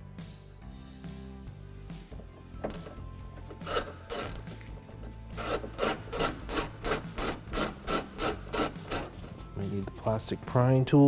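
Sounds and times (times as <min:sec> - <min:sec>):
ratchet rasping: 0:02.6 - 0:09.4.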